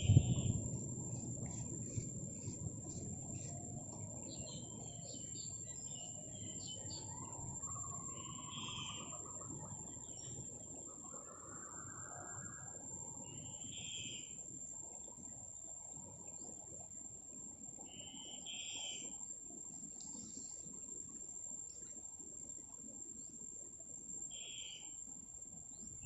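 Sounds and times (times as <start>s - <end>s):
low rustling noise: 0.0s - 4.8s
high-pitched insect drone: 0.0s - 10.4s, 24.3s - 25.0s.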